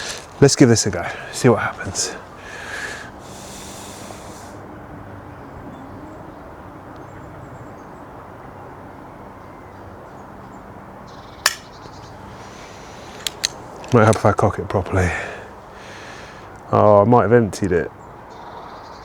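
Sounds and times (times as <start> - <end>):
air pistol trigger click: 11.5 - 11.7, 13.1 - 14.0.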